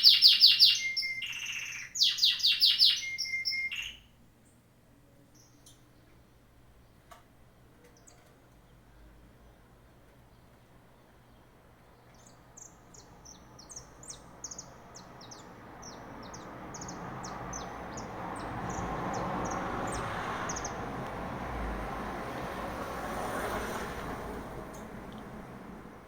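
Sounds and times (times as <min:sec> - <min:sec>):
small bird chirping: 0:00.0 - 0:04.1, 0:12.1 - 0:20.8.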